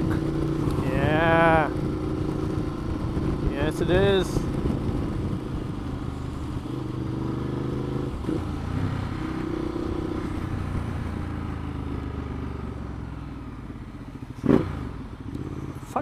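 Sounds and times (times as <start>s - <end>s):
motorcycle engine running: 0.0s - 16.0s
wind rushing: 0.6s - 10.8s.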